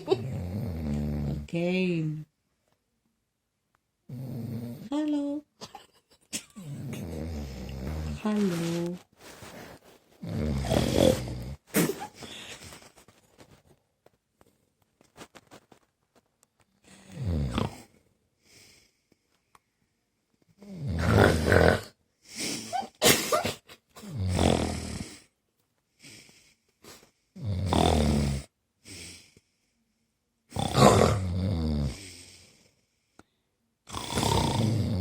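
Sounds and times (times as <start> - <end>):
man snoring heavily: 0.2 - 1.5, 4.1 - 4.8, 6.8 - 8.2, 10.2 - 11.6, 17.1 - 17.8, 20.7 - 21.9, 24.1 - 25.2, 27.4 - 28.5, 30.5 - 32.3, 33.9 - 35.0
short snorts: 9.4 - 13.0, 17.0 - 17.9, 20.7 - 23.4, 24.0 - 25.3, 26.1 - 29.2, 30.5 - 32.5, 33.9 - 35.0.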